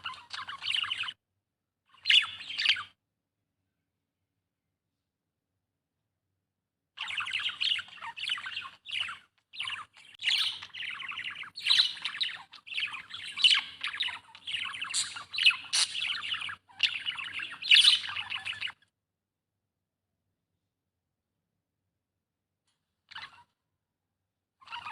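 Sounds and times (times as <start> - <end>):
budgerigar chirping and chattering: 0.0 - 1.2, 1.9 - 3.0, 7.0 - 18.8, 24.6 - 24.9.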